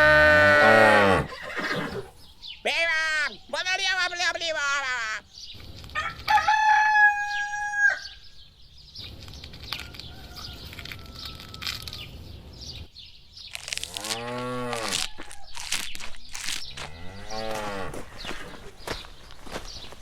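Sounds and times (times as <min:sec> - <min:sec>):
low drawn-out animal call: 0:00.0 - 0:02.2
rooster crowing: 0:06.0 - 0:08.2, 0:09.8 - 0:12.1.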